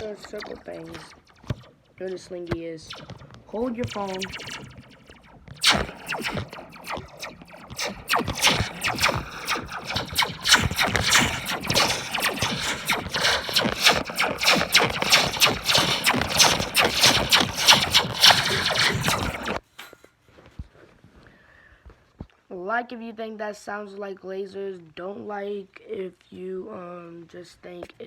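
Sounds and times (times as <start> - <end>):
spring coil ringing zaps: 0.0 - 2.0, 2.9 - 19.9.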